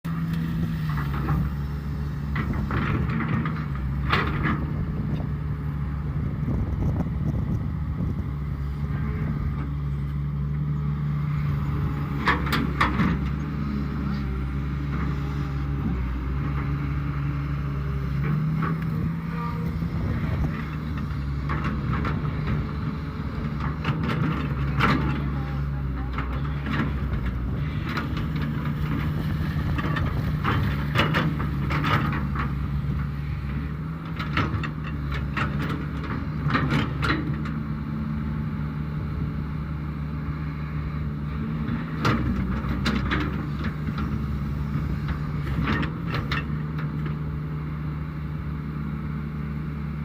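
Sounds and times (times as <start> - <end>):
excavator diesel engine running: 0.1 - 50.0.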